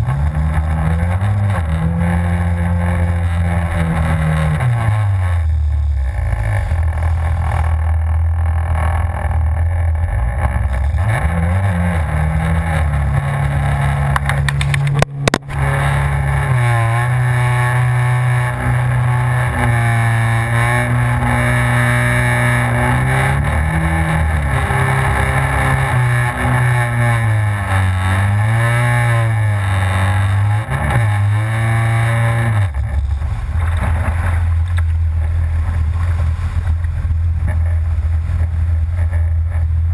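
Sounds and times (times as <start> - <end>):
jet ski engine running hard: 12.3 - 29.6, 32.1 - 39.9.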